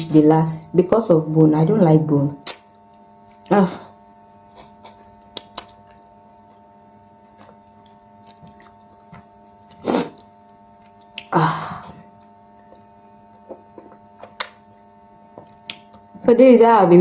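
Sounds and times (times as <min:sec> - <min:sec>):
steady electrical hum: 0:00.0 - 0:17.0
chewing and mouth clicks: 0:04.1 - 0:11.3, 0:12.1 - 0:16.2.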